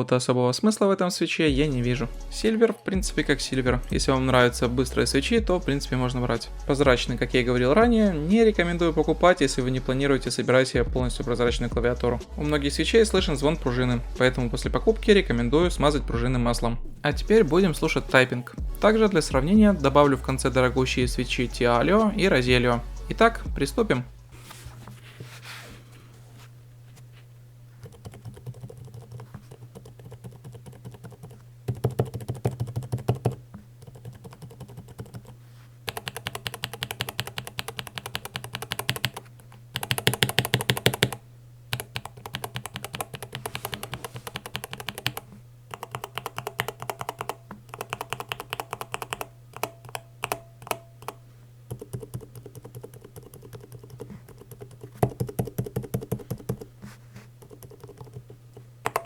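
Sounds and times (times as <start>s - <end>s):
mechanical keyboard keystroke clacks: 27.8s - 35.3s, 35.9s - 39.2s, 39.8s - 41.2s, 41.8s - 45.2s, 45.8s - 56.7s.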